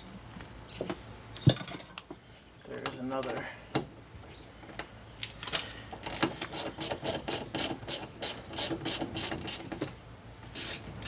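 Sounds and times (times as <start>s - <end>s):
hand ratchet clicking: 6.0s - 9.8s, 10.5s - 10.9s.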